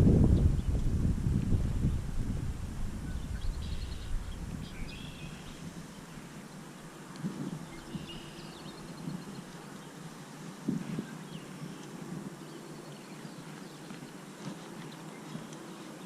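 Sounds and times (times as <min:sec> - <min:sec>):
wind rumbling on microphone: 0:00.0 - 0:16.0
small birds chirping: 0:03.1 - 0:10.3, 0:10.9 - 0:16.0.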